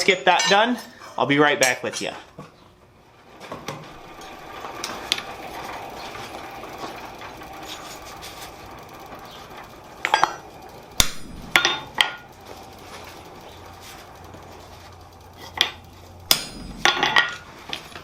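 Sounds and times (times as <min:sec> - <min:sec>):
steady background noise: 0:00.0 - 0:18.0
hammer striking steel on anvil: 0:11.0 - 0:12.2, 0:16.3 - 0:17.4.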